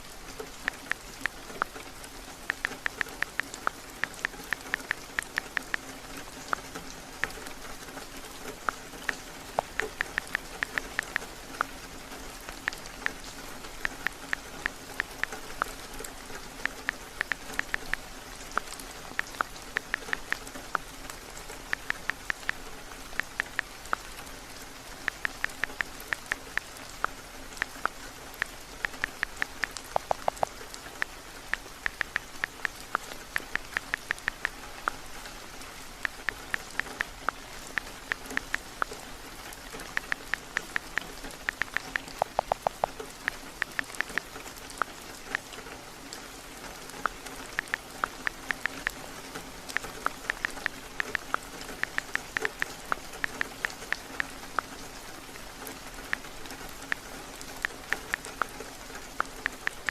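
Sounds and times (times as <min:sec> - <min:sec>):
steady rain: 0:00.0 - 0:59.9
lower-pitched clicks: 0:00.5 - 0:07.5, 0:08.6 - 0:11.8, 0:16.5 - 0:21.0, 0:21.6 - 0:24.1, 0:25.0 - 0:35.0, 0:36.0 - 0:39.0, 0:39.7 - 0:45.4, 0:49.7 - 0:54.7
touchscreen typing clicks: 0:02.5 - 0:05.9, 0:08.6 - 0:11.7, 0:16.6 - 0:18.0, 0:18.6 - 0:20.9, 0:21.6 - 0:22.6, 0:23.2 - 0:24.1, 0:25.0 - 0:26.7, 0:27.6 - 0:35.0, 0:36.0 - 0:39.0, 0:39.8 - 0:44.3, 0:47.6 - 0:49.0, 0:49.7 - 0:54.7, 0:57.6 - 0:59.9.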